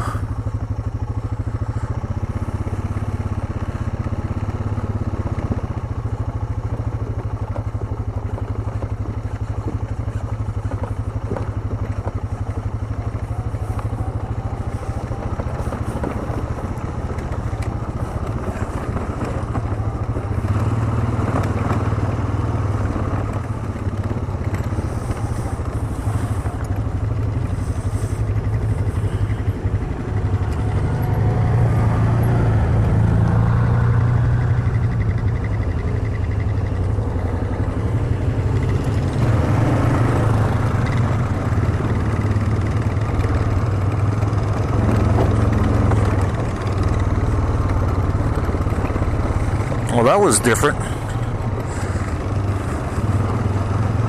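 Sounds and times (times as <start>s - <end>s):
atv engine running: 0.0s - 54.0s
light clatter: 40.8s - 50.0s.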